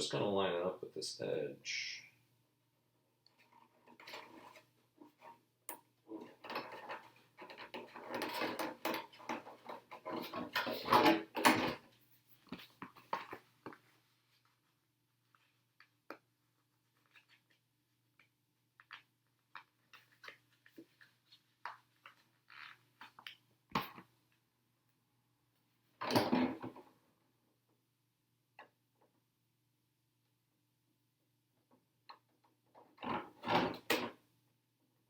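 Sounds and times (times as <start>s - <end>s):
hands tapping and rustling plastic: 5.8s - 14.5s.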